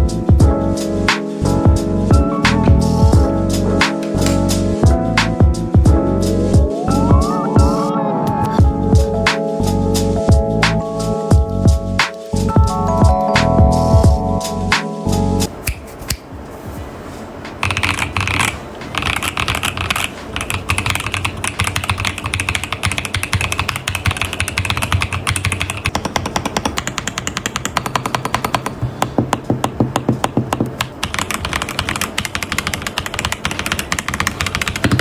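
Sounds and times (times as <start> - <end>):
rapid keyboard typing: 2.1 - 5.0, 17.6 - 35.0.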